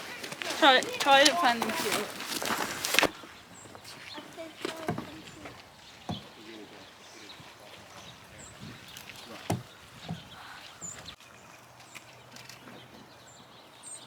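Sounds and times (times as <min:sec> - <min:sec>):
high bird chirps: 0:03.1 - 0:11.2
sharp knocks: 0:04.7 - 0:06.4, 0:08.6 - 0:10.4.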